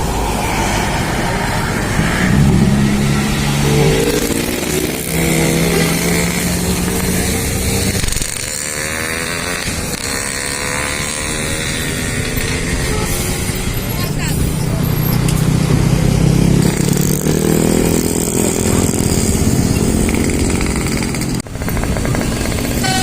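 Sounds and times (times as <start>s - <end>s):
engine accelerating: 0.0s - 23.0s
horn-like tones: 22.8s - 23.0s.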